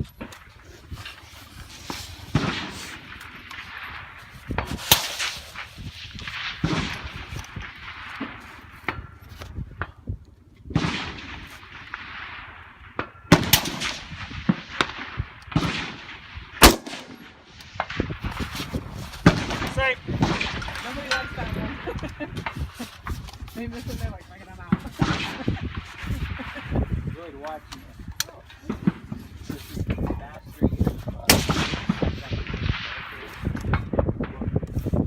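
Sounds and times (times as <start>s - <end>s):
rifle shots: 2.2s - 9.2s, 10.7s - 22.6s, 24.6s - 27.6s, 31.2s - 34.4s.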